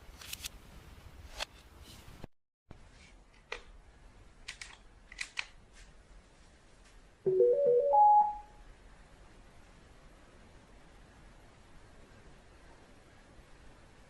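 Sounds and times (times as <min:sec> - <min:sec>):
electronic chime melody: 0:07.3 - 0:08.5.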